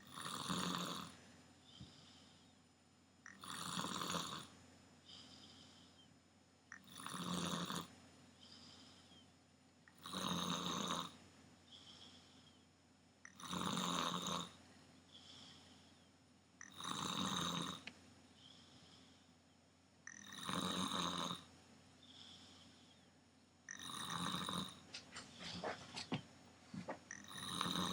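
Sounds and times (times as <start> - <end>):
person snoring: 0.0 - 1.2, 3.3 - 4.5, 6.8 - 7.9, 10.0 - 11.2, 13.3 - 14.6, 16.6 - 17.8, 20.1 - 21.5, 23.7 - 24.9, 27.1 - 27.9
faint breath: 1.6 - 2.7, 5.0 - 6.1, 8.3 - 9.4, 11.6 - 12.8, 14.6 - 16.2, 18.3 - 19.6, 22.0 - 23.2.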